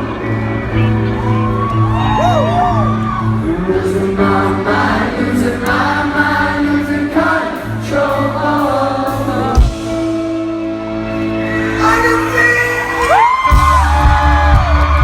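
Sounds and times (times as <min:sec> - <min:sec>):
live rock band playing: 0:07.6 - 0:15.0.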